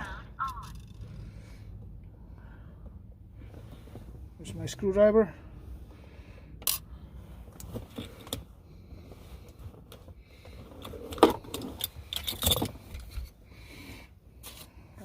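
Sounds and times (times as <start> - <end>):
clatter of tools: 10.8 - 13.3
hand tools clicking and rattling: 11.1 - 13.1.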